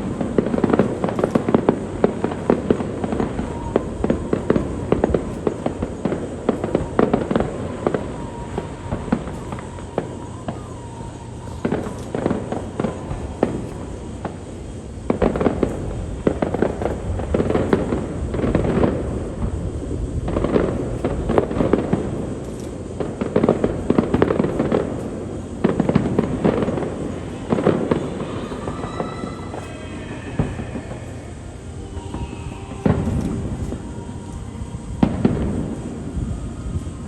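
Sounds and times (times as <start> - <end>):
fireworks bursting: 0.0 - 37.0
fireworks crackling: 0.0 - 37.0
whistling fireworks: 0.0 - 37.0.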